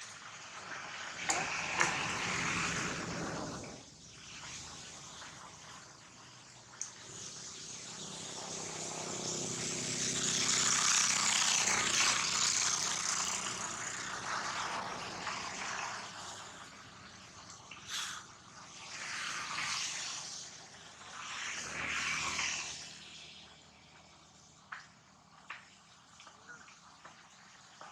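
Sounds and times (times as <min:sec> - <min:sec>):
motor vehicle passing by: 0:00.8 - 0:06.4, 0:07.0 - 0:24.6
passing traffic: 0:07.2 - 0:17.2.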